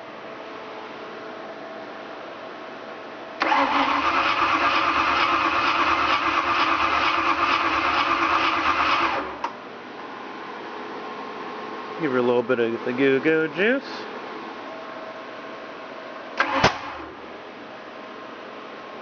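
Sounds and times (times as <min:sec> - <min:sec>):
starter motor cranking: 0:03.4 - 0:09.3.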